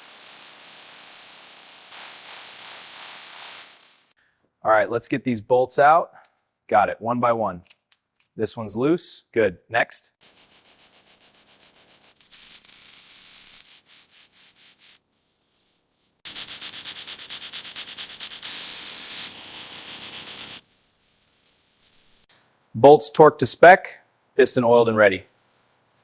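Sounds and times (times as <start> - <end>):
hand-sanding strokes: 0.0 - 4.1, 10.2 - 22.3.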